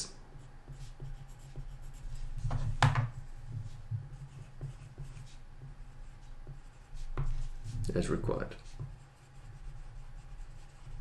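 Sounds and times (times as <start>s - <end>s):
pen scratching on paper: 0.3s - 11.0s
sharp pen tap: 2.5s - 3.1s.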